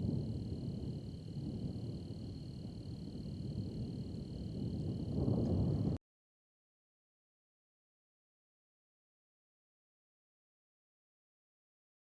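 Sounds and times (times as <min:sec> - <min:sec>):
faint high-pitched hum: 0:00.0 - 0:06.0
storm rumble: 0:00.0 - 0:06.0.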